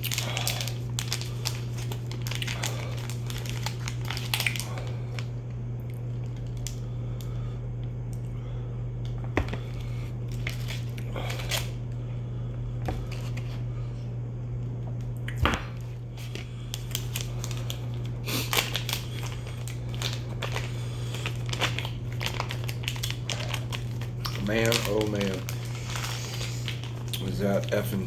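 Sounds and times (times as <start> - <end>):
wrapping crackling and rustling: 0.0 - 5.3, 9.7 - 11.8, 16.1 - 28.0
crackers being eaten: 0.0 - 8.3, 15.2 - 27.9
steady low hum: 0.0 - 28.0.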